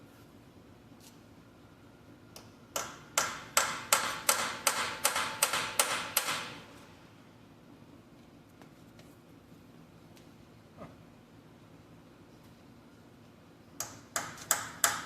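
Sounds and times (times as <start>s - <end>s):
hammer striking metal: 2.8s - 6.6s.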